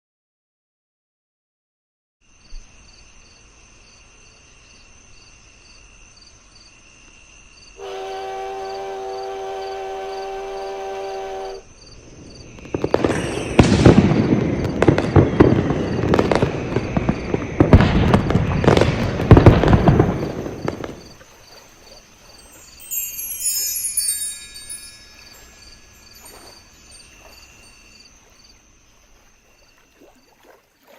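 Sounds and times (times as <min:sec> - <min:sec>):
insects chirping: 0:02.2 - 0:30.9
steam train whistle: 0:07.8 - 0:11.7
fireworks bangs and crackles: 0:11.9 - 0:21.2
sparkling chime: 0:13.0 - 0:14.2, 0:22.3 - 0:28.1.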